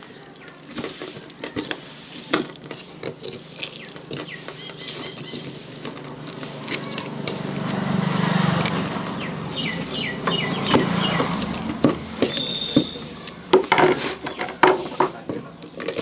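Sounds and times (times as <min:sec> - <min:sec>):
sharp clicks and knocks: 0:08.6 - 0:16.0
short squeaks: 0:12.2 - 0:13.4.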